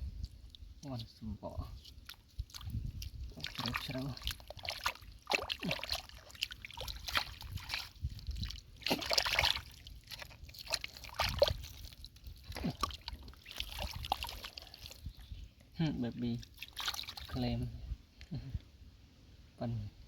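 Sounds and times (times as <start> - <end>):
hands squelching in wet mud: 0.0 - 15.7, 16.3 - 17.5
water splashing: 1.8 - 15.2, 16.4 - 17.5.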